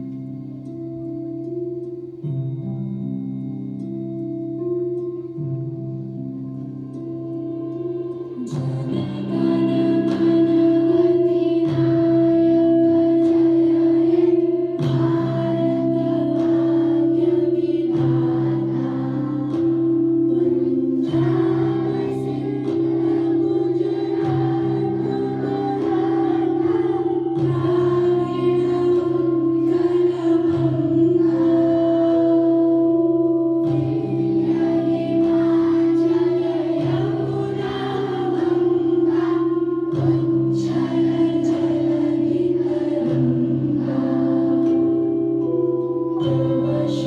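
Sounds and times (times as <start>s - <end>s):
sustained instrumental accompaniment: 0.0s - 47.0s
group singing: 8.4s - 32.5s, 33.6s - 45.6s, 46.2s - 47.0s.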